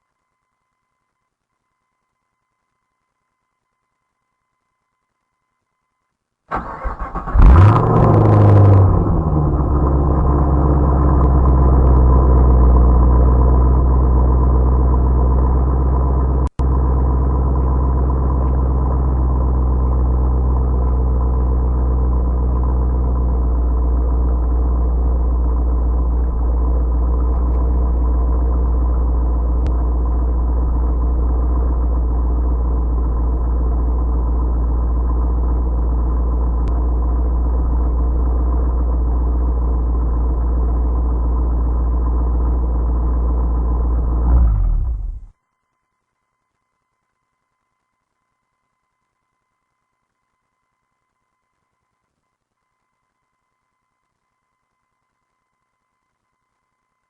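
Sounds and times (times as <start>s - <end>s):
car engine starting and idling: 6.5s - 45.4s.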